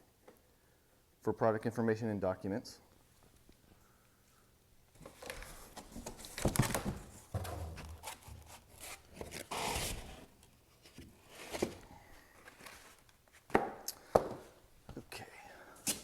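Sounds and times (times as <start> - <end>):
packaging rustling and crinkling: 5.0 - 10.3.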